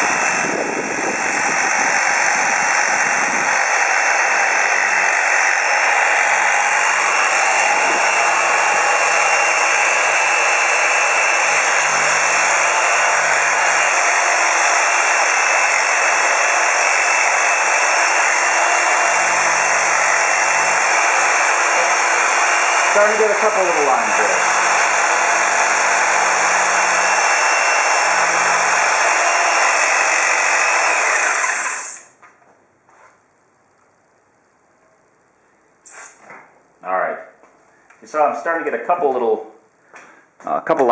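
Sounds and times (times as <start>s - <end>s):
scroll saw whirring: 0.0s - 32.2s.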